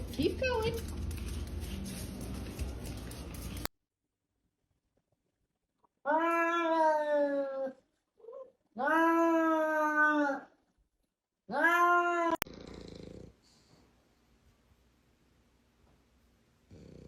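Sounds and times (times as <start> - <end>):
cat meowing: 11.5 - 12.4.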